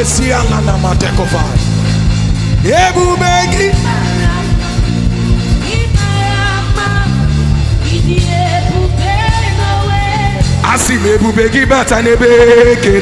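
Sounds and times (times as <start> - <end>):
gospel band playing: 0.0 - 13.0
held bass notes: 0.0 - 13.0
lead singer singing: 2.6 - 13.0.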